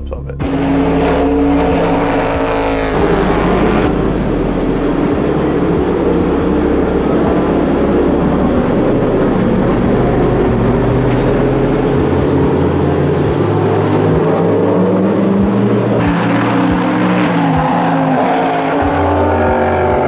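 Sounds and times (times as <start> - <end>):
race car engine running loud: 0.4 - 20.0.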